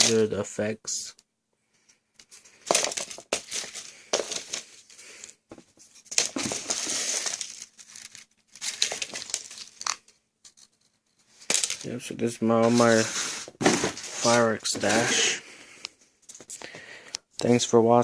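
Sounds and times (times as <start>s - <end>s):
plastic wrapping crinkling: 6.1s - 10.8s.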